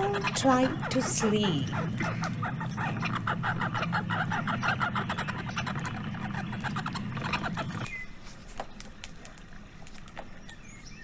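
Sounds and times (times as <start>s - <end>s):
animal chattering calls: 0.0s - 8.2s
low hum: 0.0s - 11.0s.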